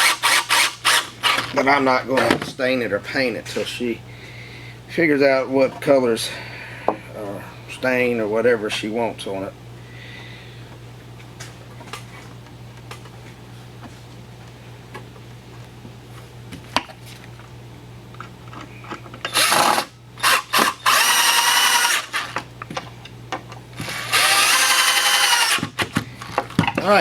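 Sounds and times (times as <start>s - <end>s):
power drill running: 0.0s - 1.5s, 19.3s - 22.4s, 23.8s - 26.0s
low steady hum: 0.4s - 27.0s.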